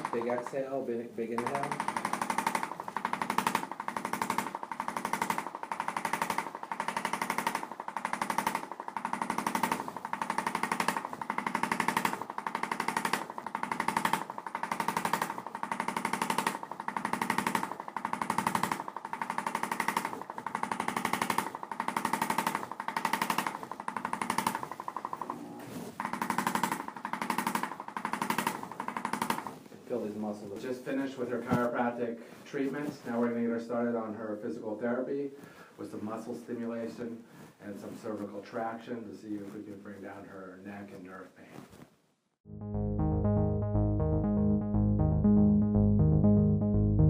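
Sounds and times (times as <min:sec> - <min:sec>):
percussion massager hammering: 0:00.0 - 0:00.6, 0:01.3 - 0:29.6.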